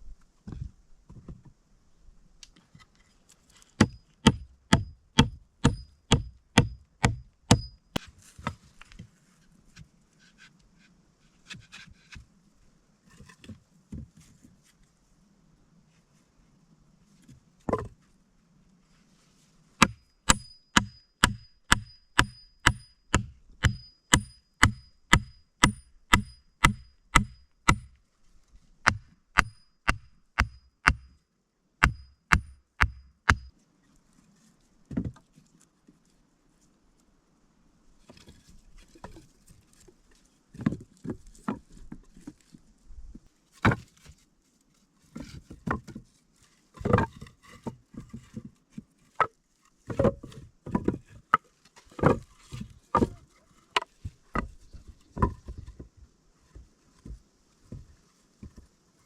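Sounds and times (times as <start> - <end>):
rustling: 8.0 - 15.2, 37.8 - 59.0
rapid chopping strikes: 19.8 - 27.9, 28.9 - 31.1, 31.8 - 33.5.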